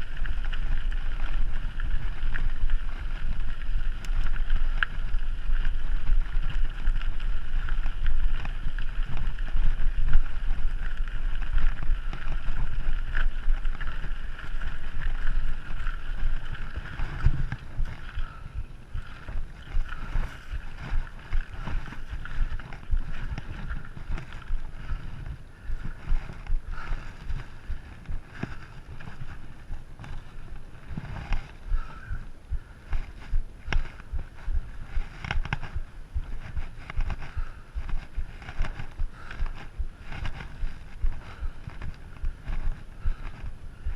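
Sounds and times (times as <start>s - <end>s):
wind rumbling on microphone: 0.0s - 43.9s.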